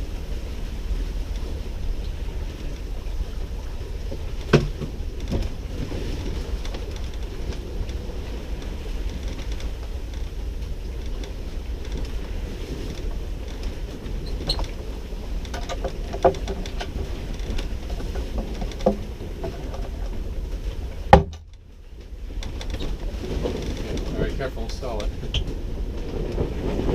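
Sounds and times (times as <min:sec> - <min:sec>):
wind and water rushing: 0:00.0 - 0:26.9
small clicks and knocks: 0:12.8 - 0:20.2.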